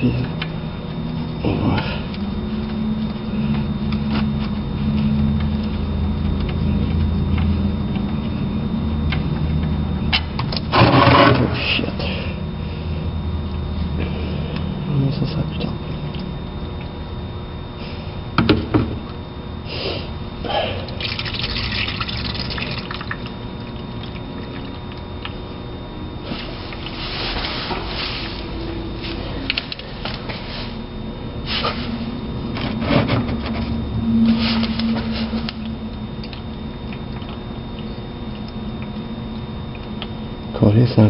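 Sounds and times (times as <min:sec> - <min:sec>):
oil pouring and splattering: 0:21.0 - 0:23.4.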